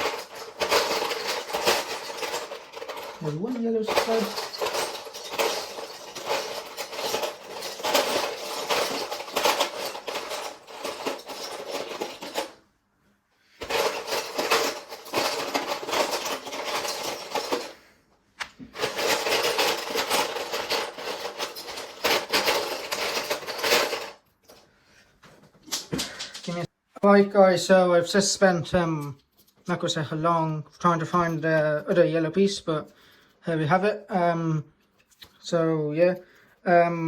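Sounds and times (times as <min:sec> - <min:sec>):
plastic bricks rattling: 0:00.0 - 0:12.6, 0:13.6 - 0:17.8, 0:18.7 - 0:24.2, 0:25.7 - 0:26.7.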